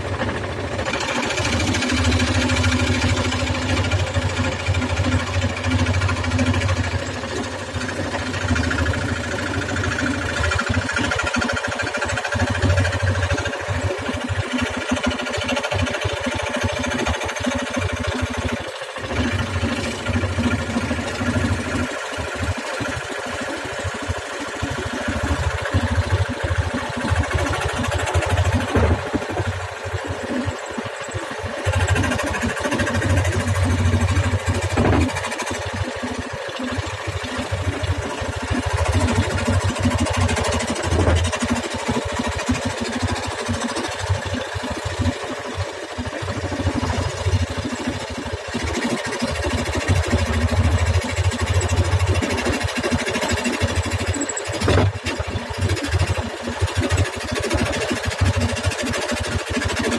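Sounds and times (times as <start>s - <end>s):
jigsaw cutting wood: 0.0s - 30.8s, 31.4s - 36.2s.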